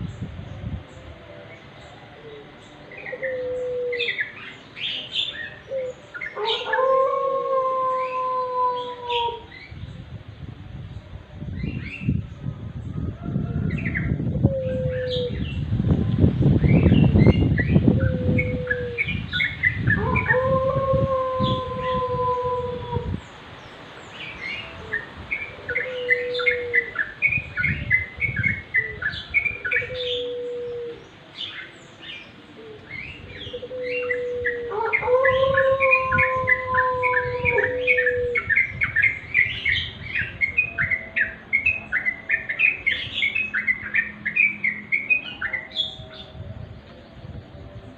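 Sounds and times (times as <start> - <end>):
low rumbling noise: 7.0 - 47.9.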